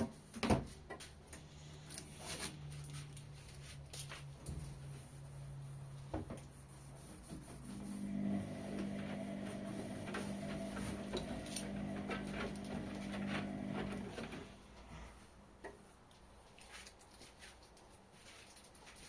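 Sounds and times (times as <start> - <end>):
washing machine motor hum: 7.5 - 14.8.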